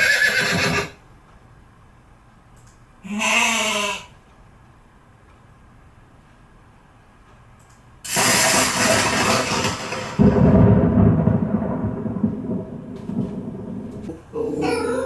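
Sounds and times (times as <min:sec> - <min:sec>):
thunder crack and rumble: 0:08.1 - 0:14.3
small dog howling: 0:14.3 - 0:15.0.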